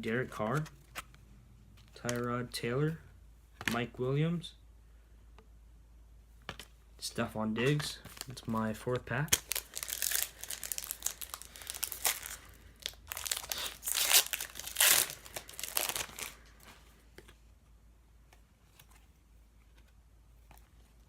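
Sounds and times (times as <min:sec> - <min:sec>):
cards rustling and clicking: 0:00.0 - 0:02.9, 0:07.6 - 0:17.5, 0:18.3 - 0:21.0
wrapper tearing and crinkling: 0:09.3 - 0:16.5.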